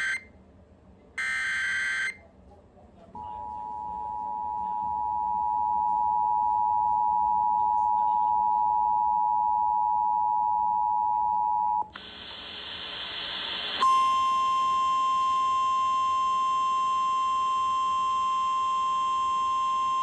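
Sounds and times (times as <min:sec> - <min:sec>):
steady alarm tone: 0:00.0 - 0:00.2, 0:03.2 - 0:11.8, 0:13.8 - 0:20.0.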